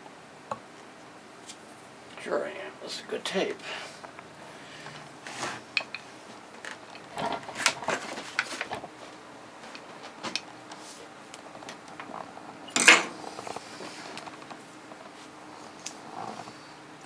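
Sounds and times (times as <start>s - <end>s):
tape handling clicks and rustles: 4.0s - 15.2s.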